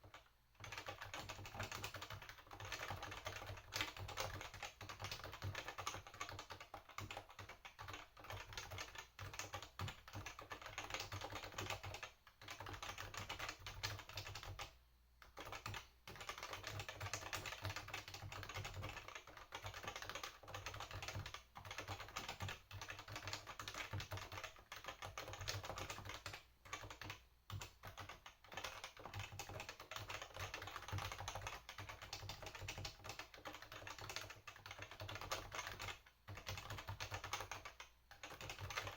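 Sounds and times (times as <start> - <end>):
fast typing on a keyboard: 0.0 - 38.9.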